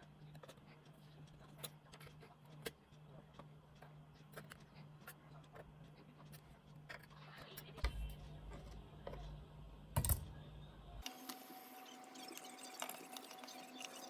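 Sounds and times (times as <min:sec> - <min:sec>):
steady low hum: 0:00.0 - 0:11.1.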